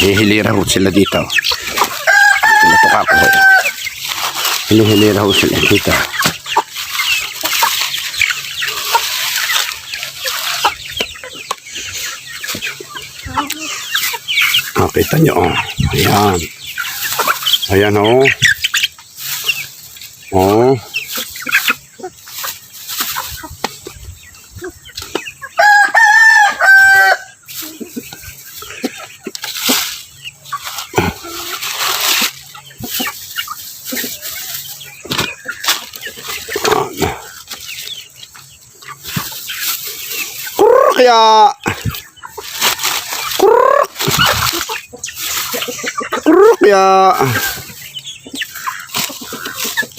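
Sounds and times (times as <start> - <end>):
chickens clucking and chirping: 0.0 - 49.9
rooster crowing: 2.0 - 3.8, 25.6 - 27.3.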